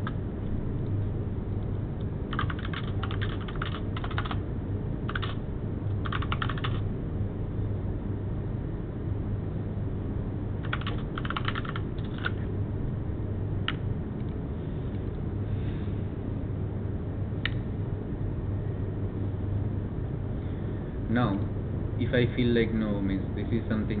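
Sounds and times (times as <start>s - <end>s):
steady low hum: 0.0s - 24.0s
keyboard typing: 2.3s - 4.4s, 5.1s - 5.4s, 6.0s - 6.8s, 10.6s - 12.5s.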